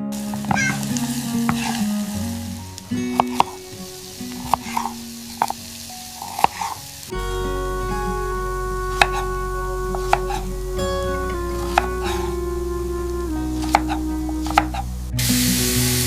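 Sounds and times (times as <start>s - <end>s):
soft guitar music: 0.0s - 16.0s
food sizzling in a pan: 0.4s - 7.6s.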